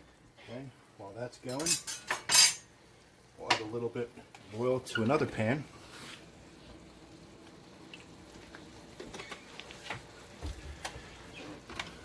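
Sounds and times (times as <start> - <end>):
faint steady hiss: 0.0 - 12.0
cookware clicks and taps: 1.5 - 2.7.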